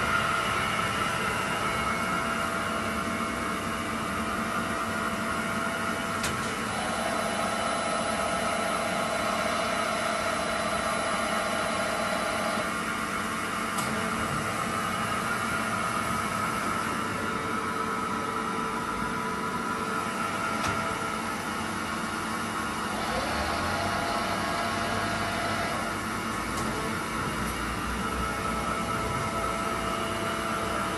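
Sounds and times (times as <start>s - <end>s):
machining centre hiss and hum: 0.0s - 30.9s
machine whine: 19.8s - 30.9s.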